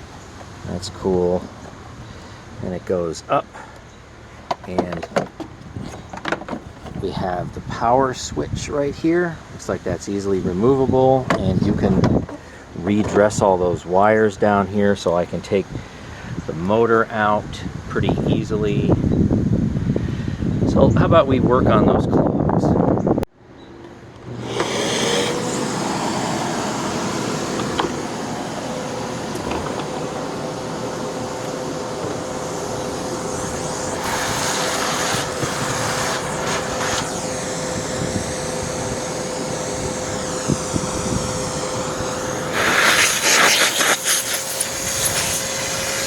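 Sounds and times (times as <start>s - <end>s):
vacuum cleaner running: 24.2s - 46.0s.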